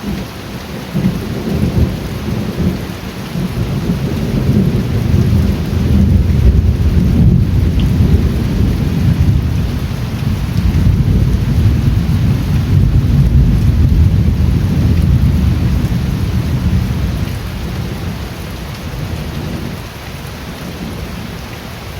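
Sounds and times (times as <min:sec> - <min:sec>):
steady rain: 0:00.0 - 0:21.9
rolling thunder: 0:01.0 - 0:18.3.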